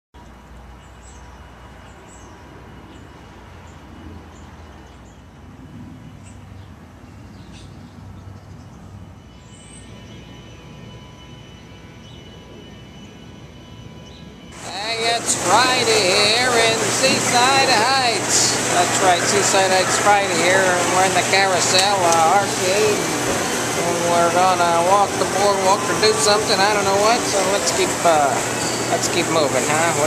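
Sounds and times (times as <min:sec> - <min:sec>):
machines rumbling and humming: 0:00.2 - 0:30.0.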